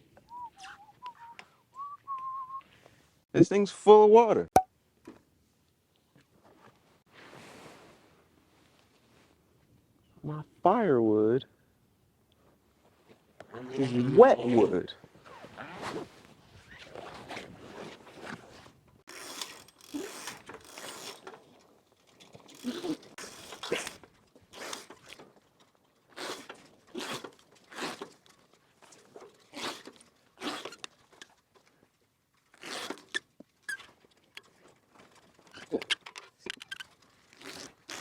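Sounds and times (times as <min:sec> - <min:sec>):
rustling and clattering of objects: 0:06.0 - 0:09.8, 0:14.9 - 0:38.0.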